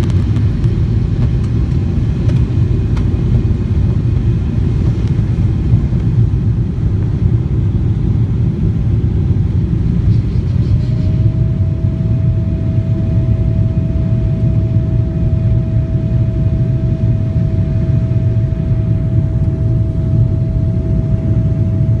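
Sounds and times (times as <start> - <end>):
jet airliner cabin rumble: 0.0 - 22.0
steady engine whine: 0.0 - 22.0.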